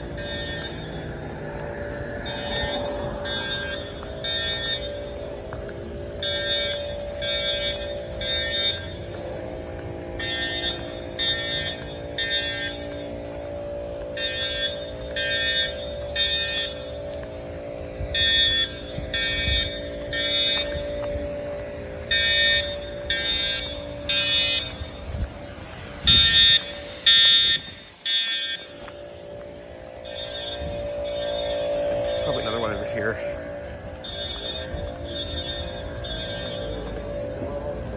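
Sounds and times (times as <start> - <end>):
buzzing fire alarm horn: 0.0 - 37.9.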